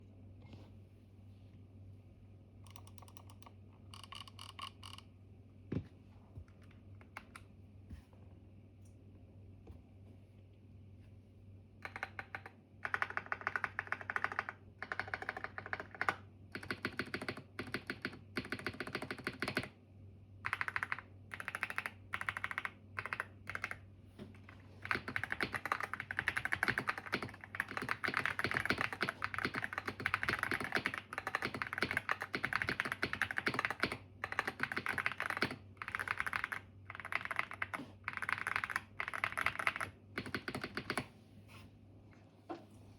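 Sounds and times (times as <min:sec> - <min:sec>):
faint low hum: 0:00.0 - 0:42.9
mechanical keyboard typing: 0:02.7 - 0:05.1, 0:11.8 - 0:19.8, 0:20.4 - 0:23.8, 0:24.8 - 0:41.1.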